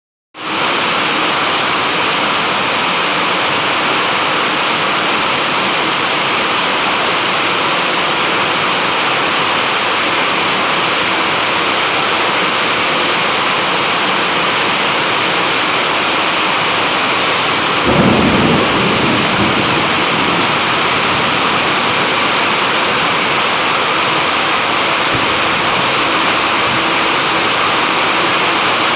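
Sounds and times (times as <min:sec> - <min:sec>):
steady rain: 0:00.4 - 0:28.9
thunder rolling: 0:15.4 - 0:28.9.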